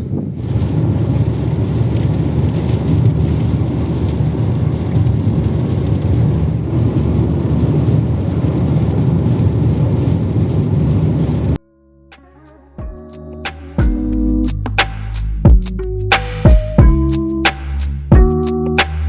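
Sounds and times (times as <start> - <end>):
rain falling: 0.4 - 11.6.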